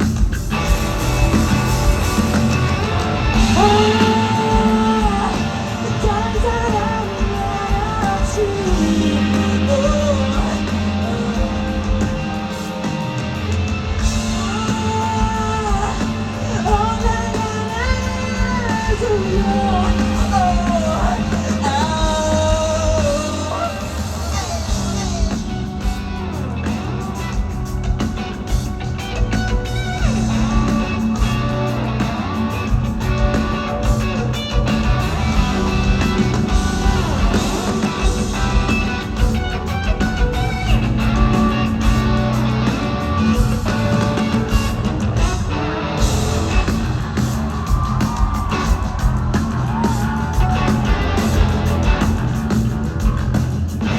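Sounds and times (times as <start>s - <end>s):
bass guitar: 0.0s - 53.9s
drums: 0.0s - 53.9s
electric guitar: 0.0s - 53.9s
person singing: 3.4s - 12.0s, 14.4s - 25.6s.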